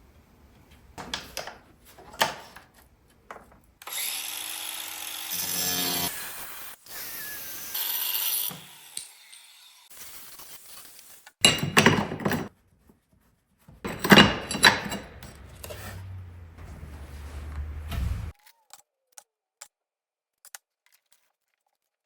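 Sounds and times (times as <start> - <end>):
power tool grinding: 3.8 - 9.9, 13.9 - 18.3.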